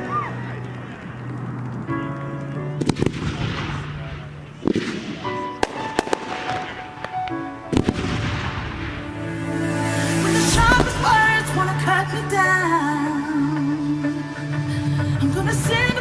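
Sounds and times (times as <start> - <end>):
music playing: 0.0 - 16.0
fireworks bursting with bangs: 2.8 - 4.0, 4.6 - 9.0.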